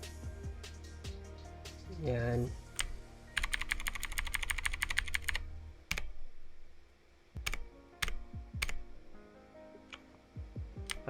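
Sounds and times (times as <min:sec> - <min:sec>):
mechanical keyboard keys clicking: 0:02.8 - 0:06.6, 0:07.4 - 0:09.2.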